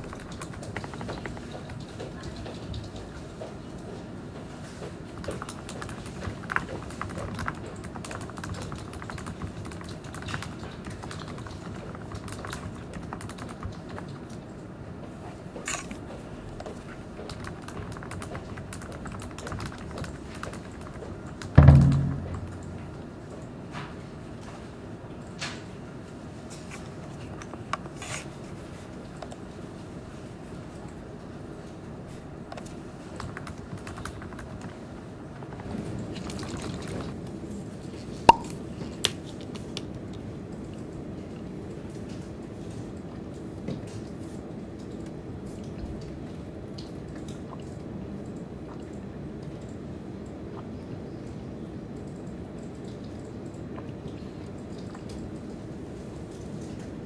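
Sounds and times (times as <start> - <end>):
low background hum: 0.0 - 57.0
typing on keyboard: 5.2 - 14.7
loud low thump: 21.6 - 23.2.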